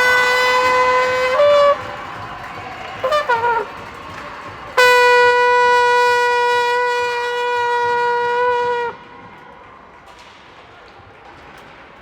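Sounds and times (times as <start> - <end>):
scoreboard horn blast: 0.0 - 2.3, 2.9 - 9.3.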